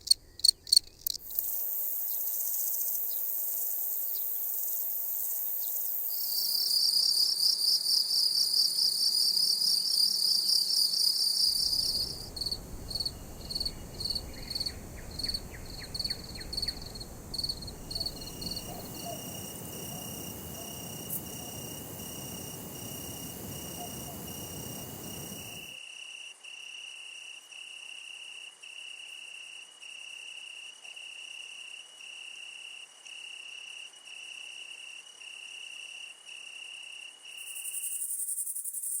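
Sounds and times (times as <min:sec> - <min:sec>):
cicada buzzing song: 0:00.0 - 0:25.8
cricket pulsed chirps: 0:00.0 - 0:25.8, 0:36.3 - 0:39.0
insect steady high trill: 0:00.0 - 0:25.8, 0:37.4 - 0:39.0.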